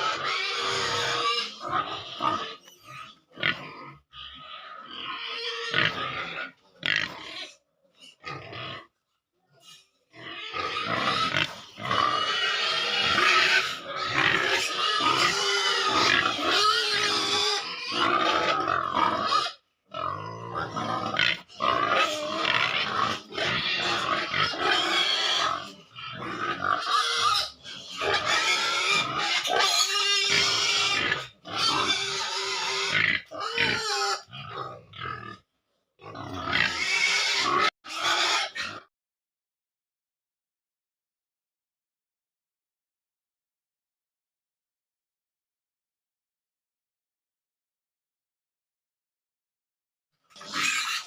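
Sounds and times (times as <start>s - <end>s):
pigs grunting and squealing: 0.0s - 38.9s, 50.2s - 51.0s.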